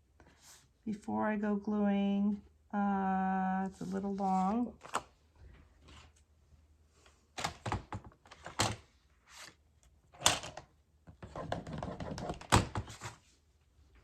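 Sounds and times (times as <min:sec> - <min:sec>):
paper rustling: 0:03.7 - 0:05.1.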